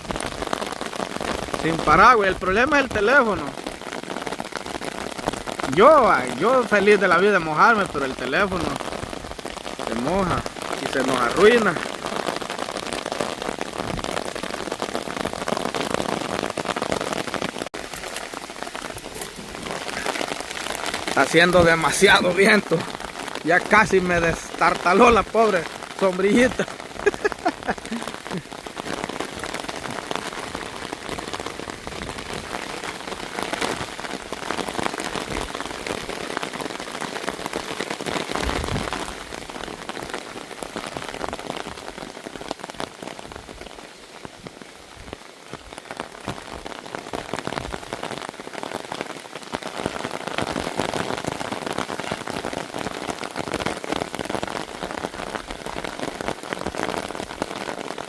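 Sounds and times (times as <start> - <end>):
rain on umbrella: 0.0 - 58.0
wind buffeting microphone: 38.4 - 39.0.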